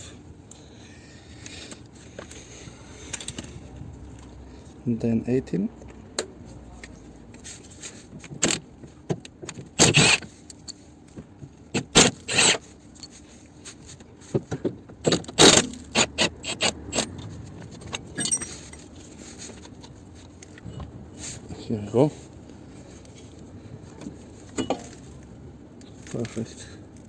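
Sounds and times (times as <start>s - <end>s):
metal tools clinking and scraping: 2.9s - 3.7s, 11.8s - 14.0s, 15.1s - 21.6s, 24.4s - 25.2s
socket wrench rasping: 9.8s - 10.6s, 11.8s - 12.6s, 15.0s - 18.8s.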